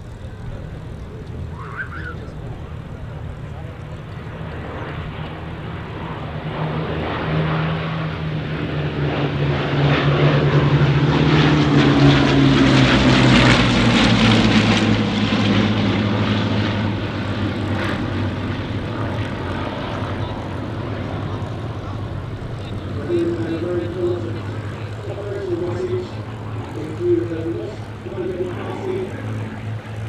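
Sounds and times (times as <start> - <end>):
propeller aircraft flying past: 0.0 - 30.0.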